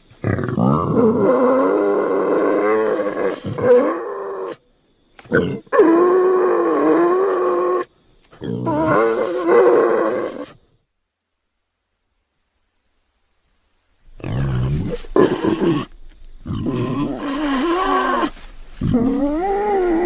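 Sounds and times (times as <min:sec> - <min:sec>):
wild boar calls: 0:05.3 - 0:10.6, 0:14.1 - 0:20.0.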